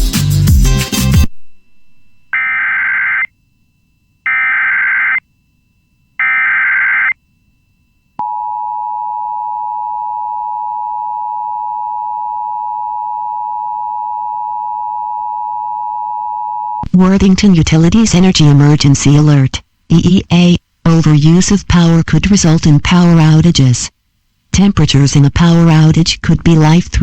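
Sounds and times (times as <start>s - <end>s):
digital header data bursts: 2.4s - 3.3s, 4.3s - 5.2s.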